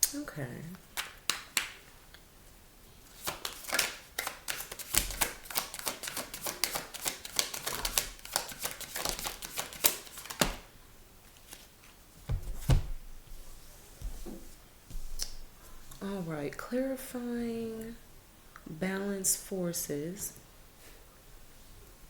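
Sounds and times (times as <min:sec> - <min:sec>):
cards being shuffled: 0:03.1 - 0:10.6, 0:11.4 - 0:12.8.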